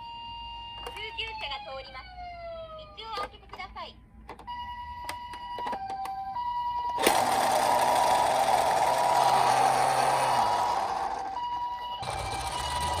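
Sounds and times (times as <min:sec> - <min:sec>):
toy two-tone siren: 0:00.0 - 0:03.3, 0:04.4 - 0:13.0
toy rattling whir: 0:07.0 - 0:11.4, 0:12.0 - 0:13.0.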